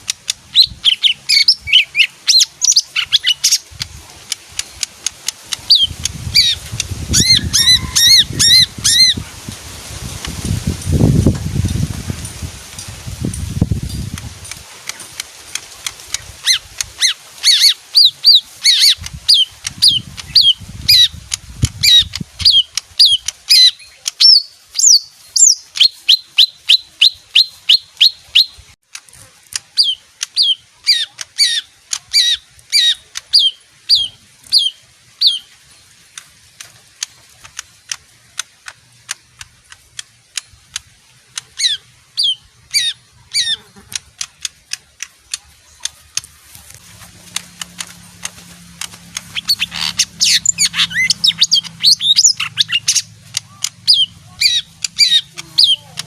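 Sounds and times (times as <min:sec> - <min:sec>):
bird singing high sweeping notes: 0:48.9 - 0:55.9.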